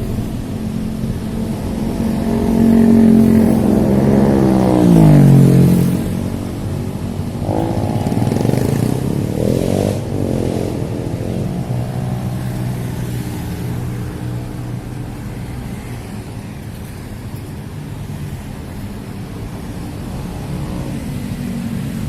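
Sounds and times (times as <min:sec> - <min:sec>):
engine revving: 0:00.0 - 0:14.8.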